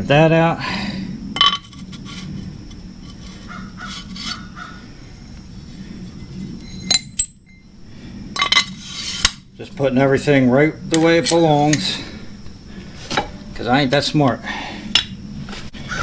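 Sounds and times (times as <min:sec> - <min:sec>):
steady low hum: 0:00.0 - 0:16.0
metal tools clinking: 0:01.4 - 0:02.2, 0:03.1 - 0:04.5, 0:06.1 - 0:07.7, 0:08.4 - 0:09.4, 0:10.9 - 0:12.0.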